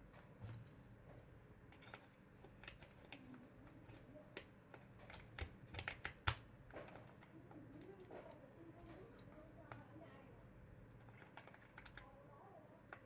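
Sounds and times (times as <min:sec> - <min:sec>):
mechanical keyboard keystrokes: 0:04.3 - 0:07.2, 0:11.0 - 0:12.1.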